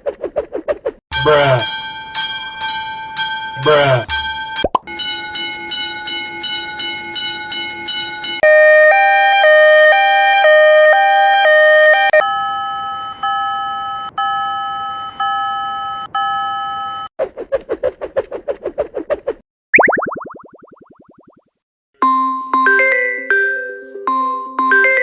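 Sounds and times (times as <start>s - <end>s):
crossing bell dinging: 1.1s - 8.4s
two-tone electronic alarm: 1.2s - 17.1s
fast pulsing tone: 19.8s - 21.4s.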